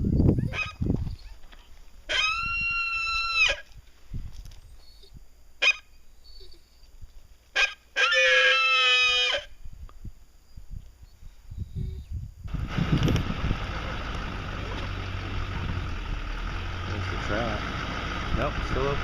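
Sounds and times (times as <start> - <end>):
dog whining: 0.4 - 1.4, 2.1 - 3.6.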